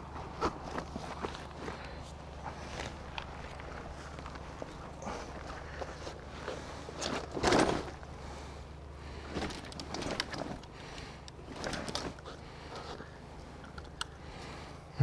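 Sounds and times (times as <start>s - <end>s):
steady low hum: 0.0s - 15.0s
handling noise rustling and knocking: 5.6s - 8.0s.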